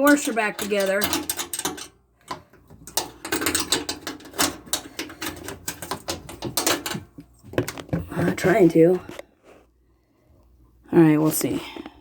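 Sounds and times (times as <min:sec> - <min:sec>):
plastic and metal parts clicking: 0:00.0 - 0:08.0.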